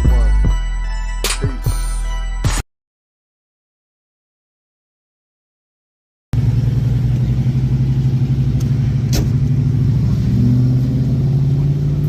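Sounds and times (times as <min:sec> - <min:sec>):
car engine running: 0:06.4 - 0:12.0.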